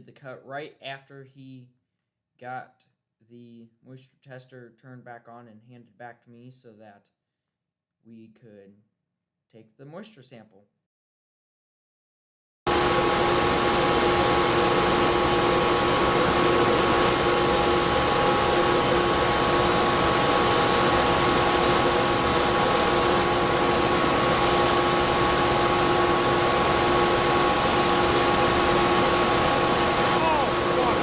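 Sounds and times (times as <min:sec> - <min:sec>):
grain dryer fan roar: 0:12.7 - 0:31.0
steady humming tones: 0:12.7 - 0:31.0.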